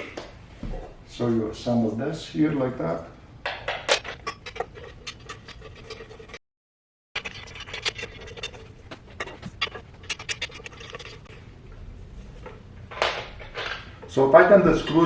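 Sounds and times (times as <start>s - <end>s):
metal parts clinking and scraping: 3.9s - 6.4s, 7.2s - 11.4s, 12.9s - 14.1s
screws turned by hand: 7.2s - 11.3s.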